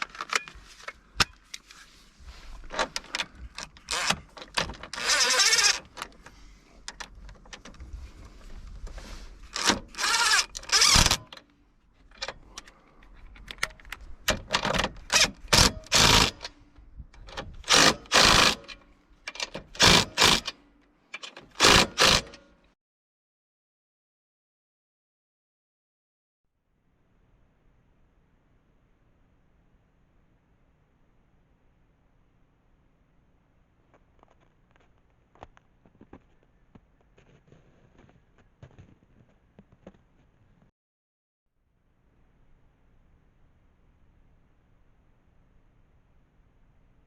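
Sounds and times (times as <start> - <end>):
cordless drill bursts: 5.0 - 5.8, 9.6 - 11.2, 15.6 - 16.5, 17.6 - 18.8, 19.7 - 20.5, 21.4 - 22.4.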